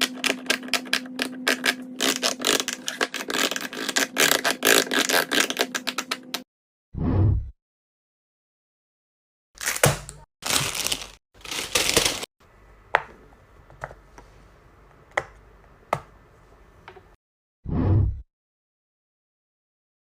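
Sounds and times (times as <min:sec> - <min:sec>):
fidget toy crunching: 0:00.0 - 0:06.3.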